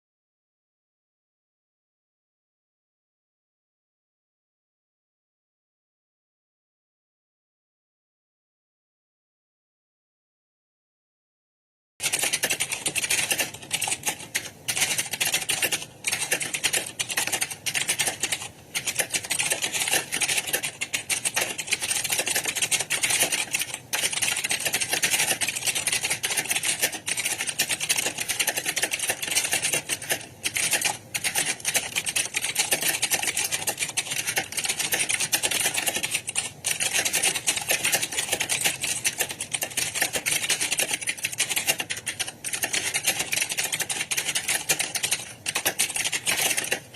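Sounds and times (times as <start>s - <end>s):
computer keyboard typing: 12.0s - 46.9s.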